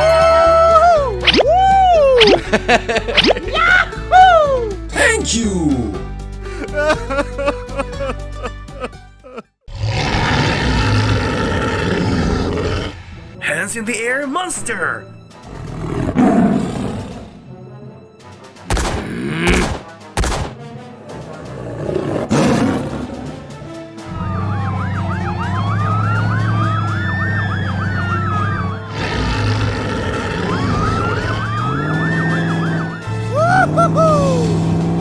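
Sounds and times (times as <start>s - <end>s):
thumps and crashes: 18.7s - 20.6s
police siren wailing: 24.1s - 34.7s.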